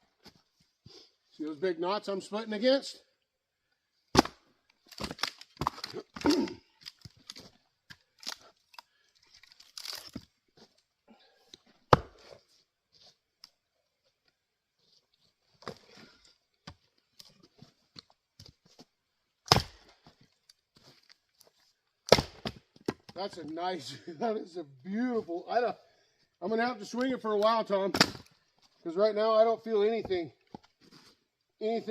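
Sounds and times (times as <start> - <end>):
axe splitting firewood: 4.1 - 10.7, 11.6 - 12.4, 19.4 - 20.2, 22.0 - 23.2, 27.9 - 28.3
wood fibres crackling and tearing: 4.1 - 10.9.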